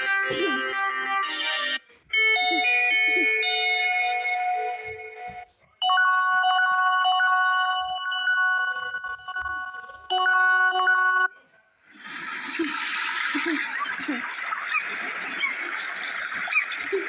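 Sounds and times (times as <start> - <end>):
ringtone tune: 0.0 - 11.4
bell-like phone ring: 2.2 - 11.4.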